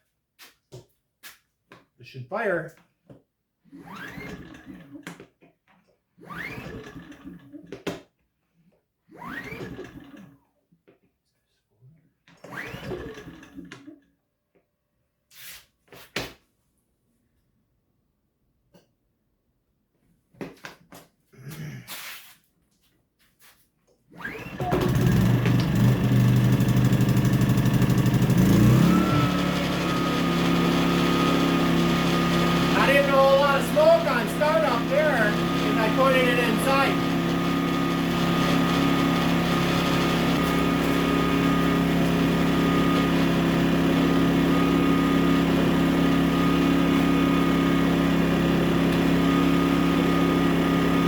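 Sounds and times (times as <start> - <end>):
recoil starter pull whirr: 3.7 - 5.0, 9.1 - 10.4, 24.2 - 51.0
generator engine running: 24.4 - 51.0.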